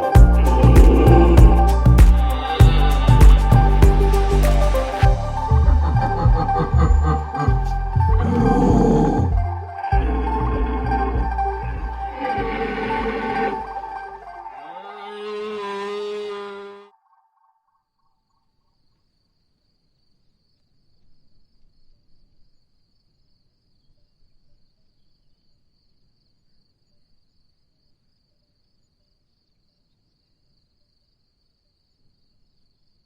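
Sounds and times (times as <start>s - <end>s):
insects trilling: 0.0s - 5.5s, 9.7s - 16.9s
loud pitched tone: 0.0s - 16.9s.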